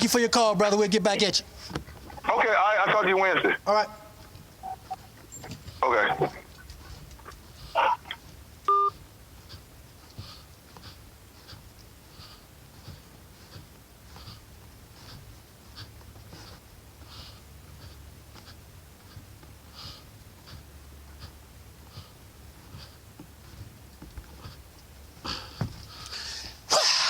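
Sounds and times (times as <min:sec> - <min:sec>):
low steady hum: 0:00.0 - 0:27.0
faint scuffing: 0:03.4 - 0:26.7
person breathing hard: 0:09.4 - 0:23.6, 0:25.2 - 0:26.9.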